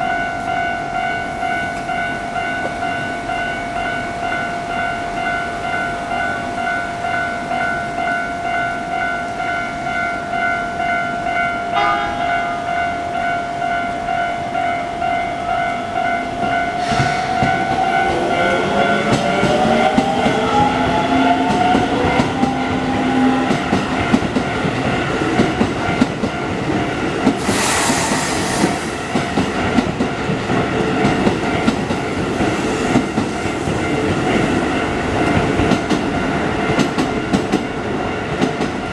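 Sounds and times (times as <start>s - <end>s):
burst of hiss: 16.8s - 17.6s, 27.4s - 29.0s
wheels clattering on rails: 16.8s - 27.5s.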